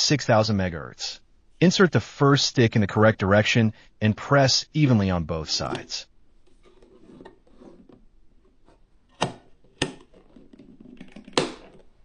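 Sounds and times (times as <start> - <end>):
faint rubbing and handling: 5.6 - 12.0.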